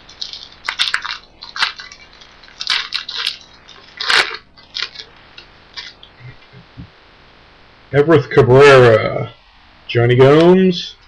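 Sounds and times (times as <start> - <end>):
cards rustling: 0.0 - 6.1
paper wrapper crinkling and tearing: 0.0 - 6.1.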